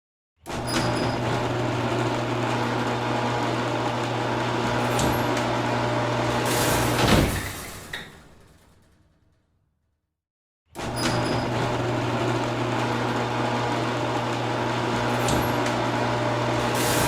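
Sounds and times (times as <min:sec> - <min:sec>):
garage door motor humming: 0:00.5 - 0:08.4, 0:10.8 - 0:17.0
garage door clunk: 0:00.6 - 0:09.1, 0:10.8 - 0:17.0.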